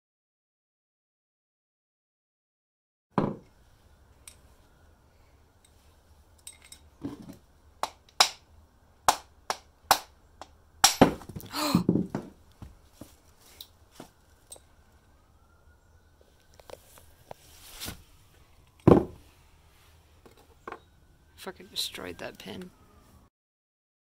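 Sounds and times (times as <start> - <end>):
tools and metal parts clicking: 6.4 - 6.9.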